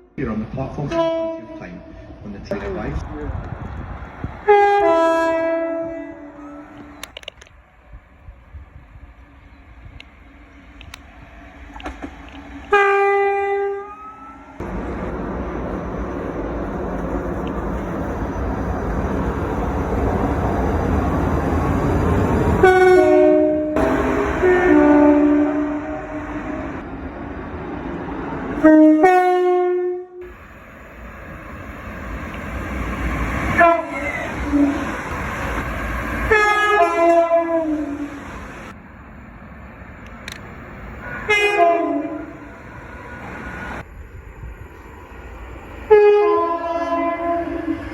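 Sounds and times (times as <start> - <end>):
train rushing by: 0.0 - 29.5, 30.2 - 47.9
train horn high note: 0.8 - 2.1, 4.4 - 6.9, 12.7 - 14.8, 22.6 - 26.8, 28.6 - 30.2, 33.5 - 35.0, 36.3 - 38.2, 41.0 - 42.4, 45.9 - 47.8.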